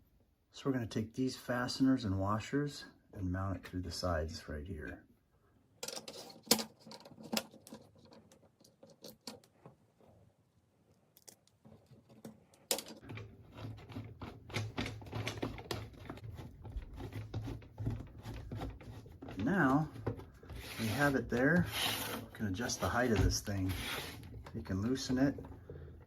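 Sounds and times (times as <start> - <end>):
small plastic parts clicking: 5.8 - 9.6.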